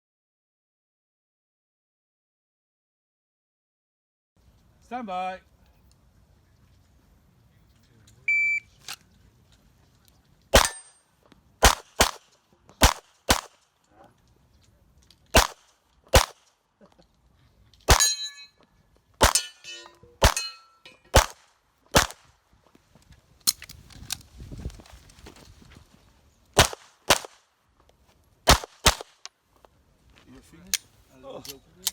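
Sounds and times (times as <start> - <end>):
shot timer beep: 8.3 - 8.6
handgun shots: 10.5 - 10.9, 11.6 - 13.6, 15.3 - 16.5, 17.9 - 18.4, 19.2 - 19.6, 20.2 - 22.3, 26.6 - 27.4, 28.5 - 29.3
ring of hit steel targets: 10.6 - 11.0, 17.9 - 18.6, 19.2 - 21.2.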